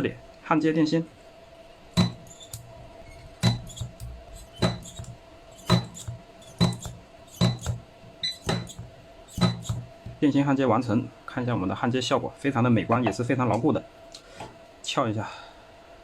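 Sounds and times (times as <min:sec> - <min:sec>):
faint steady whine: 0:00.0 - 0:16.0
spot welder snaps: 0:02.0 - 0:02.7, 0:03.4 - 0:10.2.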